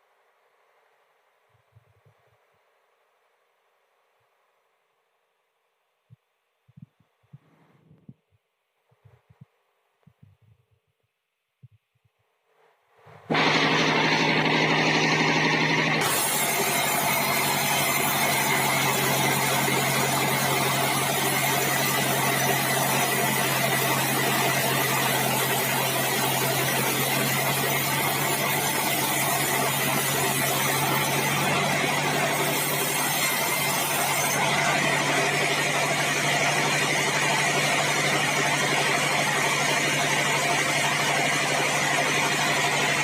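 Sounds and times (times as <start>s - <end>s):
band saw cutting wood: 13.3s - 43.0s.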